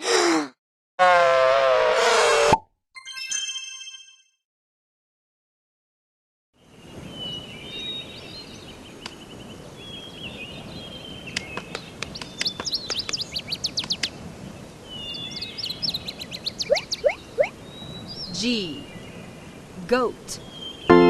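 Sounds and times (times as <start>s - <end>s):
outdoor background noise: 6.6s - 20.9s
birds chirping and trilling: 6.6s - 21.0s.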